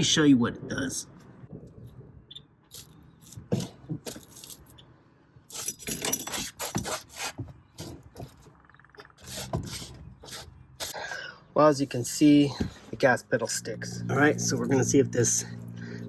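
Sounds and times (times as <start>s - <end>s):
gas pedal clicks and scrapes: 6.1s - 11.0s.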